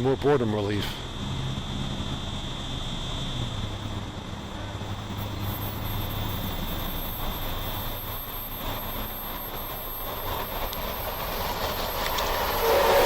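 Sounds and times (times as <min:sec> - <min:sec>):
train approaching rumble: 0:00.0 - 0:13.0
high insect buzz: 0:01.1 - 0:13.0.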